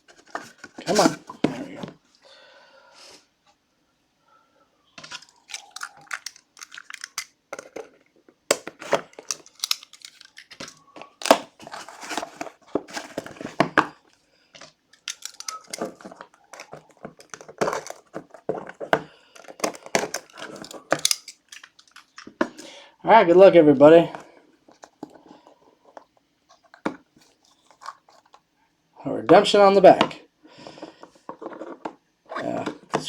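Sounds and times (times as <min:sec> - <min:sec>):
plastic wrapping tearing and crinkling: 0:05.1 - 0:07.4, 0:08.8 - 0:13.6, 0:15.0 - 0:18.3.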